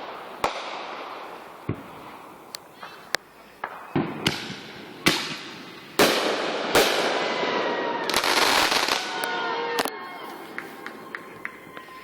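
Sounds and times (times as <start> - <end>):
firework crackling and hiss: 0.0 - 7.4, 8.1 - 12.0
firework bangs: 0.0 - 12.0.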